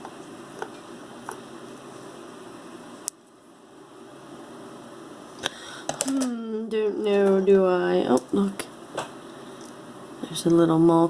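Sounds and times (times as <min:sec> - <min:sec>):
low background hiss: 0:00.0 - 0:11.0.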